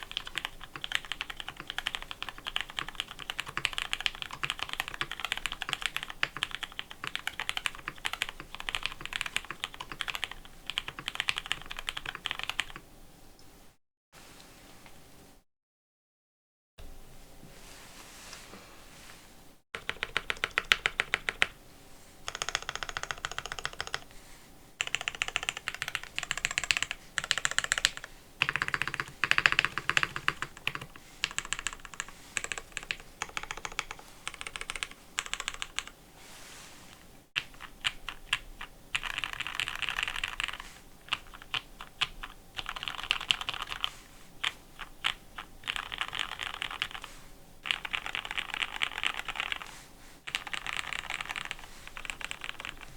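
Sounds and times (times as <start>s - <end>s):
mechanical keyboard typing: 0.0s - 12.8s, 19.8s - 21.6s, 22.3s - 24.1s, 24.8s - 35.9s, 37.4s - 43.9s, 44.8s - 49.7s, 50.3s - 52.9s.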